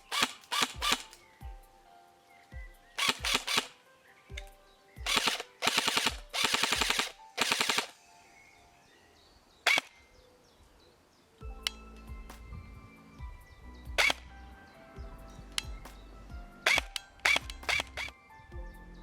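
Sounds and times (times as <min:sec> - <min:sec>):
airsoft gun full-auto bursts: 0:00.0 - 0:01.2, 0:03.0 - 0:03.7, 0:05.0 - 0:08.0, 0:14.0 - 0:14.2, 0:16.6 - 0:18.1.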